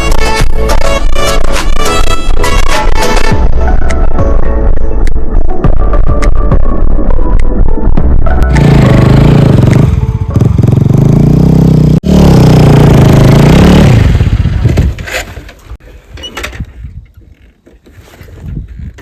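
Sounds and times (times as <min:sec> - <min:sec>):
vehicle engine running loudly: 0:08.5 - 0:15.3.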